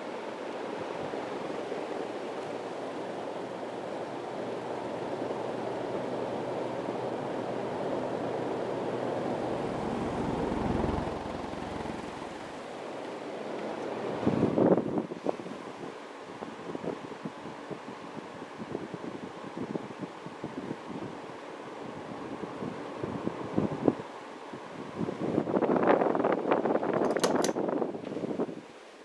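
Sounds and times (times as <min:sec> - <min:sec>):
ceiling fan running: 0:00.0 - 0:28.6
low rumble: 0:09.2 - 0:12.6.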